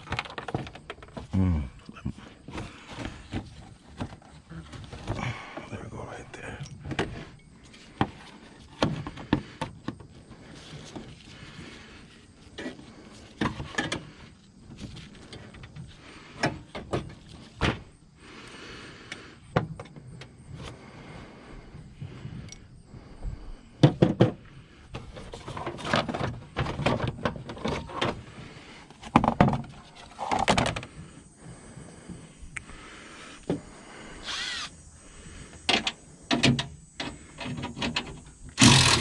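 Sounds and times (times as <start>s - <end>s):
car parts and tools rattling: 0.0s - 1.3s, 2.3s - 17.6s, 23.8s - 31.2s, 35.6s - 39.0s.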